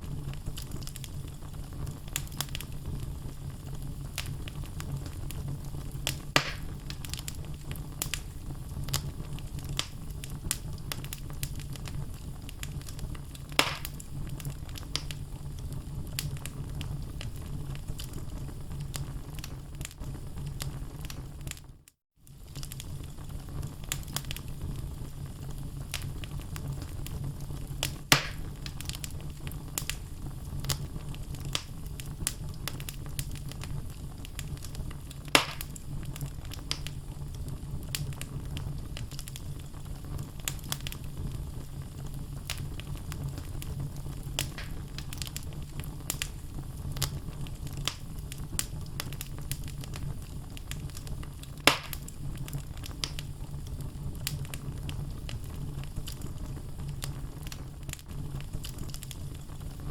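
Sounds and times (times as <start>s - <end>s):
fire burning with crackles: 0.0s - 59.9s
logs popping: 6.0s - 7.3s, 13.4s - 14.0s, 27.8s - 29.0s, 35.2s - 35.8s, 44.4s - 45.4s, 51.6s - 52.1s.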